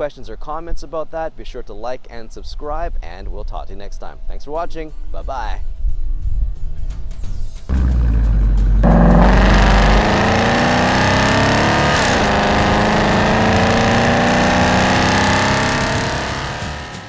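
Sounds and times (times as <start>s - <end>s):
deep rumble: 7.7s - 17.0s
droning chord rising in pitch: 7.7s - 17.0s.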